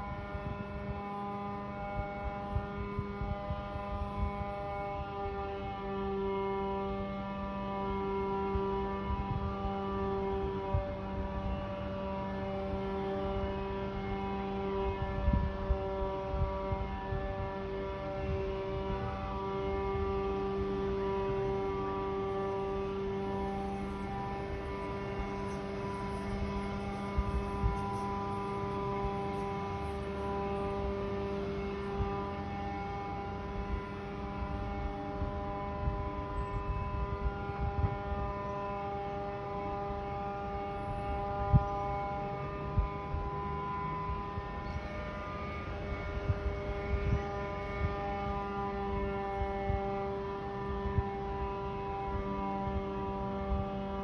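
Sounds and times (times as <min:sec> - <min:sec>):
droning hum of held tones: 0:00.0 - 0:54.0.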